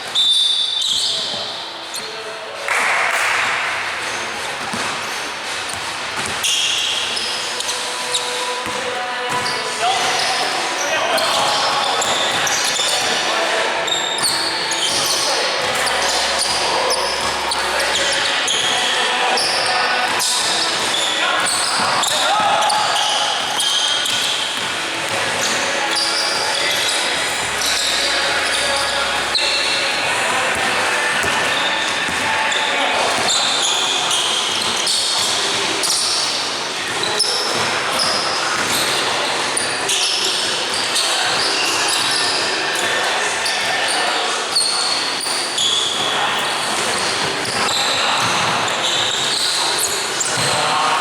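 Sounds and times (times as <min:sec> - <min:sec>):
sneakers squeaking on court: 0:00.0 - 0:02.3, 0:03.2 - 0:51.0
basketball bouncing: 0:03.2 - 0:06.6, 0:23.4 - 0:35.6, 0:50.2 - 0:50.6.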